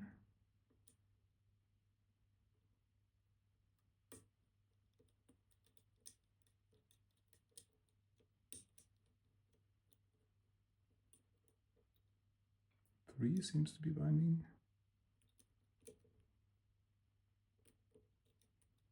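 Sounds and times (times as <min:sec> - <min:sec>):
faint lock pick clicks: 0:04.9 - 0:10.0, 0:15.2 - 0:16.1.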